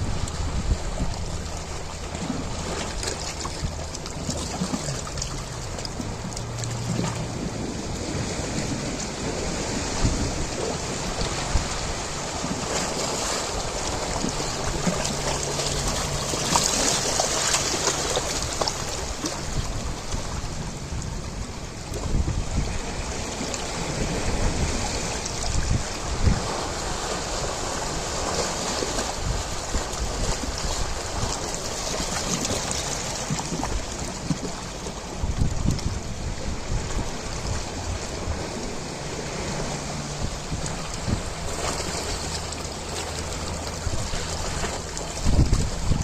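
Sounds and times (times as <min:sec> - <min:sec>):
ocean waves washing in: 0:00.0 - 0:46.0.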